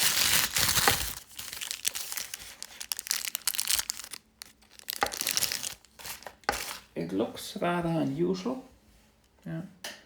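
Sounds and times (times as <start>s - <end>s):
packaging crinkling and rustling: 0.0s - 6.9s.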